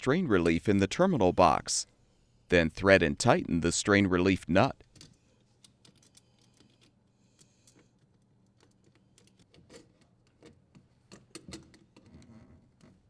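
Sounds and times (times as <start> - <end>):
metal parts and wires clicking: 4.9 - 13.0.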